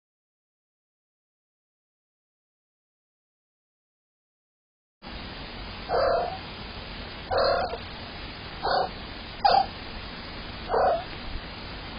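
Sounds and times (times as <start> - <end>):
faint steady hiss: 5.0 - 11.9
cat meowing: 5.9 - 6.4, 7.3 - 7.8, 8.6 - 9.7, 10.7 - 11.1.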